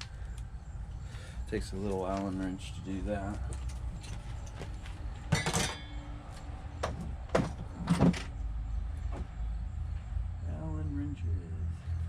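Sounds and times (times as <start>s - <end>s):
tools knocking and clinking: 5.3s - 6.0s
tools rattling clatter: 5.3s - 6.0s.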